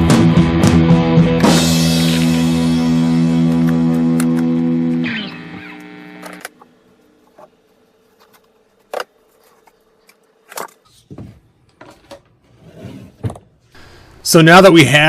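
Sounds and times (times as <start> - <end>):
rock music with guitar: 0.0 - 6.5.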